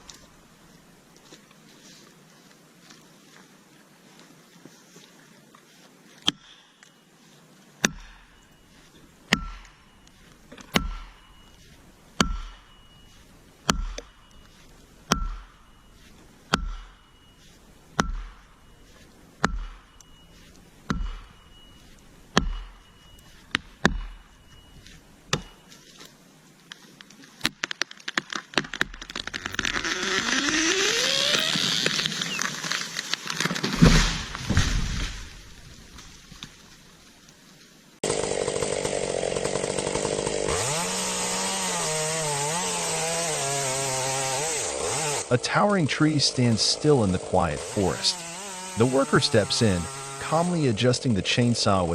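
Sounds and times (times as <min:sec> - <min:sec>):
axe blows with metallic ring: 0:09.3 - 0:10.0, 0:10.7 - 0:11.6, 0:12.2 - 0:13.1, 0:15.1 - 0:17.3
tree cracking and crashing down: 0:27.4 - 0:37.2.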